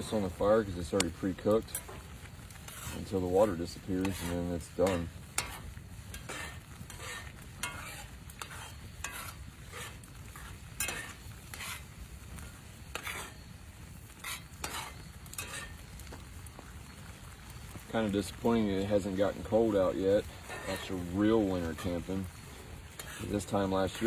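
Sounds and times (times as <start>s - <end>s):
chicken sizzling in a skillet: 0.0s - 24.0s
scraping strokes in a skillet: 0.0s - 24.0s.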